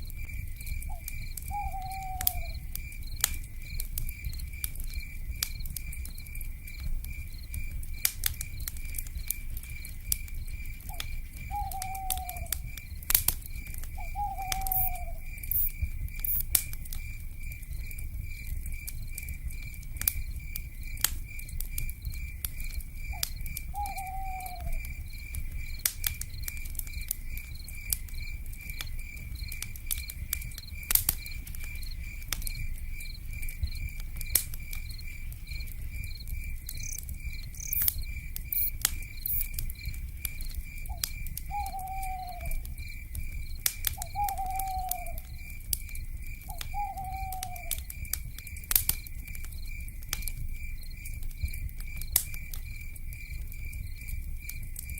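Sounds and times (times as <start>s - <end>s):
wood fire crackling and popping: 0.0s - 54.9s
owl call: 0.9s - 2.6s, 11.0s - 12.6s, 14.0s - 15.2s, 23.8s - 24.8s, 40.9s - 42.6s, 44.0s - 45.2s, 46.6s - 47.8s
pulsing insect trill: 36.8s - 39.9s.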